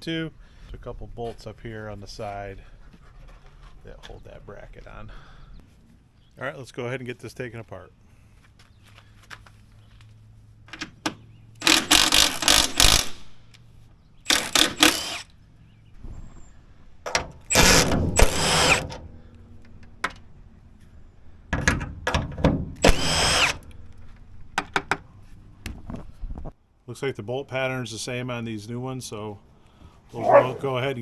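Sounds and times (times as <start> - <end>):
cordless drill running: 11.6 - 13.4, 14.3 - 15.3, 17.5 - 19.3, 22.8 - 24.0.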